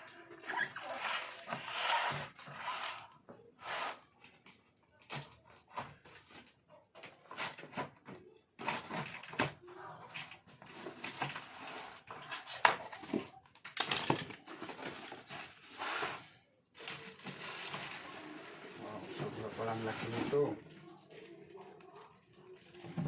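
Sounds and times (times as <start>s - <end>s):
packaging crinkling and rustling: 8.6s - 23.0s.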